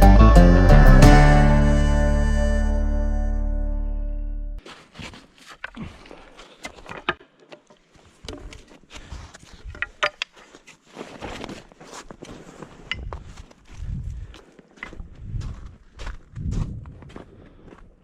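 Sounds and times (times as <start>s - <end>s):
footsteps crunching on frozen snow: 4.6s - 6.9s, 10.4s - 18.0s.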